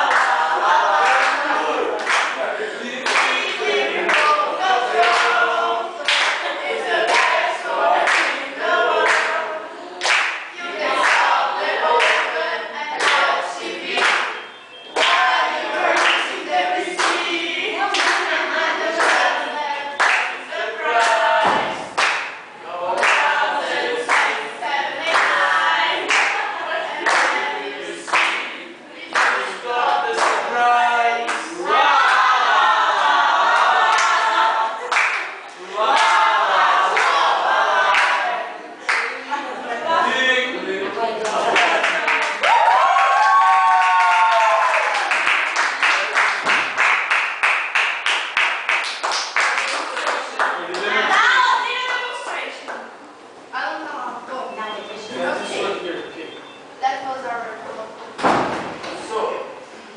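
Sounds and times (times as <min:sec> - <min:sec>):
voices singing together: 0:00.0 - 0:53.6
sharp claps keeping time: 0:43.8 - 0:50.8.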